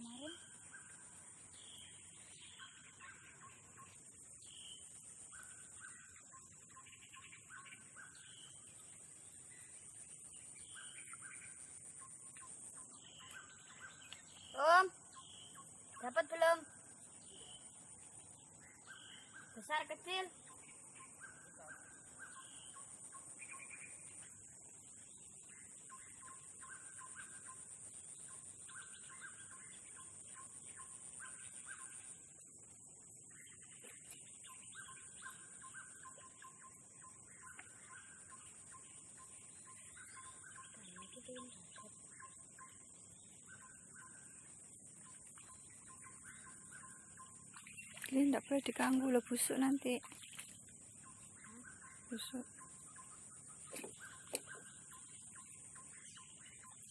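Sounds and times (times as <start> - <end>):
faint bird calls: 25.6 - 56.9.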